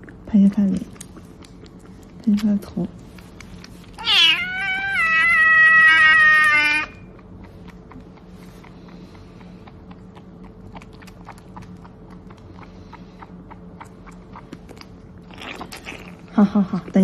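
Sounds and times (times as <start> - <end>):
cat lapping milk: 0.0 - 4.4, 7.0 - 16.3.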